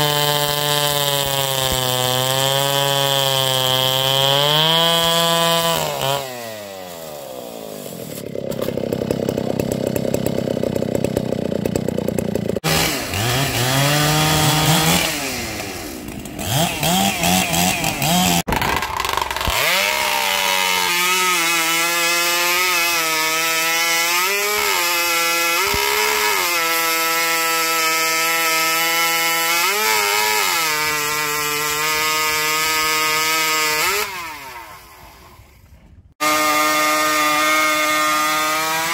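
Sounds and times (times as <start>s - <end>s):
chainsaws revving: 0.0s - 38.9s.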